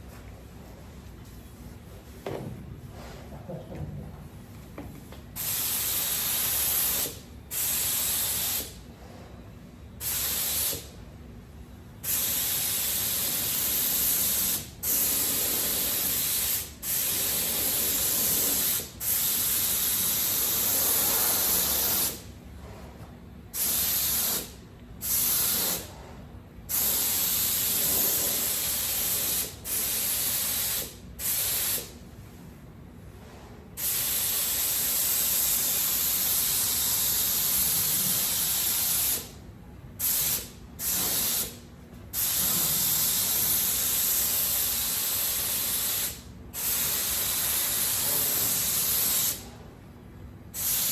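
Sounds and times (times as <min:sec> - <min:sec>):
paint spray gun hissing: 0:05.4 - 0:08.8, 0:10.0 - 0:10.9, 0:23.6 - 0:25.9, 0:40.0 - 0:41.6, 0:42.2 - 0:49.4, 0:50.6 - 0:50.9.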